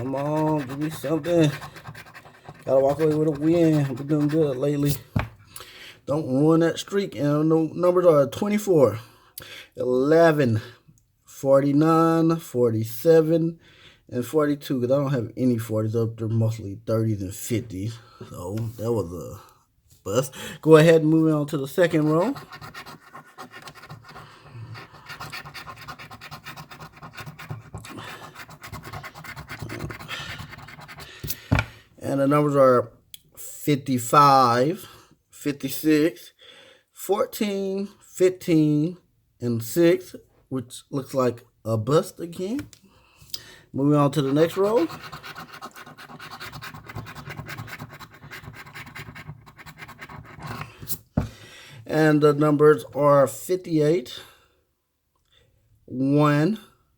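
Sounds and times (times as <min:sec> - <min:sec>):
scratching lottery ticket: 0:00.0 - 0:05.0, 0:21.7 - 0:31.2, 0:44.0 - 0:50.7.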